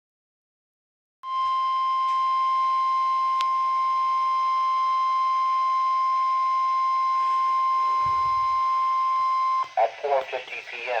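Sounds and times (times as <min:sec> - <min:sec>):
steady high alarm tone: 0:01.2 - 0:09.8.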